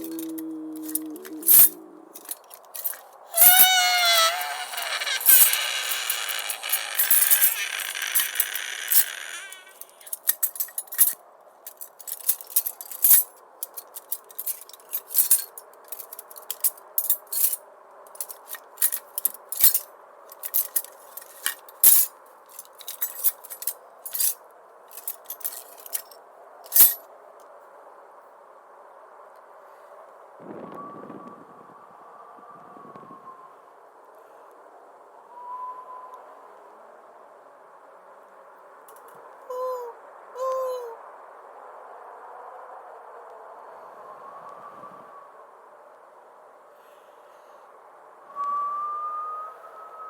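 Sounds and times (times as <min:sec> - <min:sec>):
sharp metallic clinks: 0:00.0 - 0:27.0.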